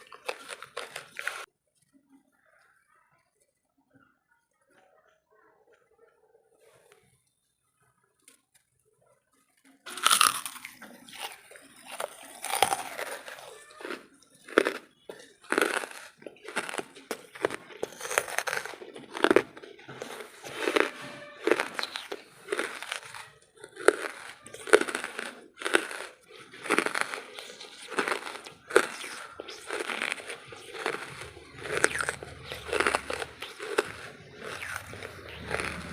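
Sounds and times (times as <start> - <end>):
chewing charcoal crunches: 0.0 - 1.5, 9.6 - 35.9.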